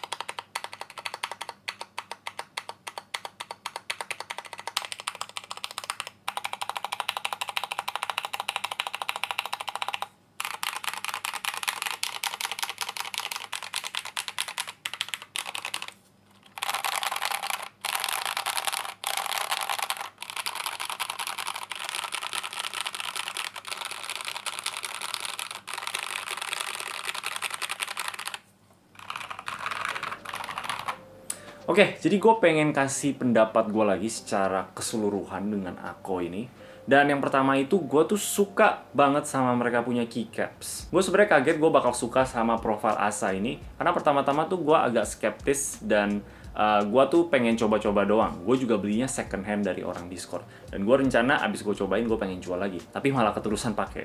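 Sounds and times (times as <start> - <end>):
keyboard typing clacks: 0.0 - 16.0, 16.6 - 28.4, 29.0 - 31.4.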